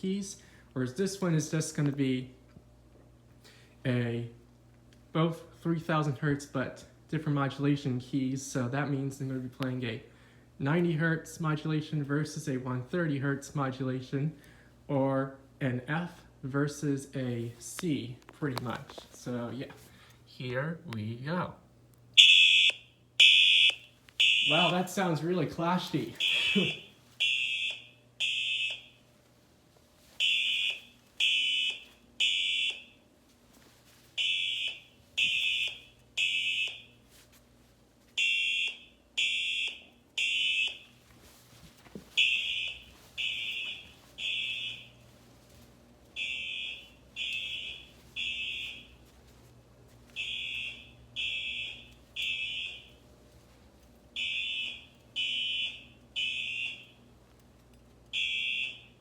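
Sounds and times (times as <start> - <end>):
buzzing fire alarm horns: 22.2 - 29.1, 30.0 - 33.2, 34.1 - 37.1, 38.1 - 41.0, 42.2 - 45.2, 46.1 - 49.2, 50.1 - 53.1, 54.1 - 57.1, 58.0 - 59.0.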